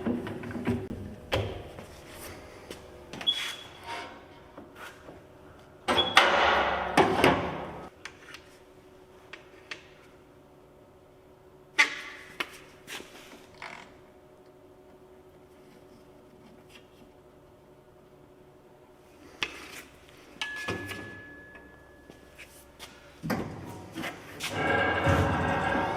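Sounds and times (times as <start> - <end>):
clanks and knocks: 24.4 - 25.9.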